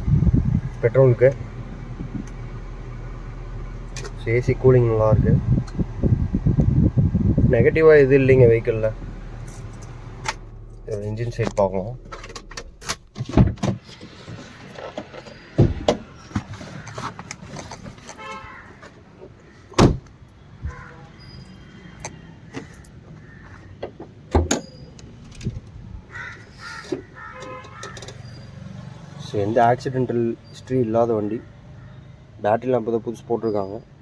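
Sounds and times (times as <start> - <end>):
car door and bonnet shutting: 0.0 - 18.4, 19.8 - 20.1, 24.3 - 25.6
car engine idling: 0.0 - 18.7.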